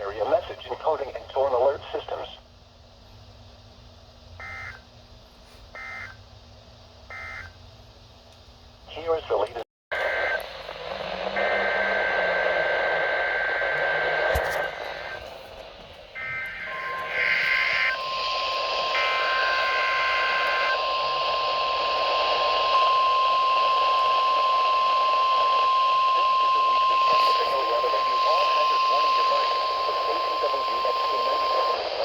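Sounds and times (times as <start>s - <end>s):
radio hiss: 0.0s - 2.4s, 8.9s - 32.0s
steady single-pitch alert tone: 16.2s - 20.9s.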